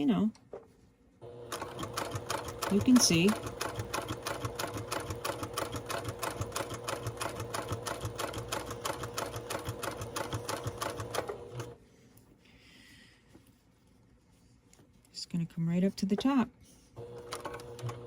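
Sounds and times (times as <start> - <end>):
sewing machine stitching: 1.2 - 11.8, 17.0 - 18.0.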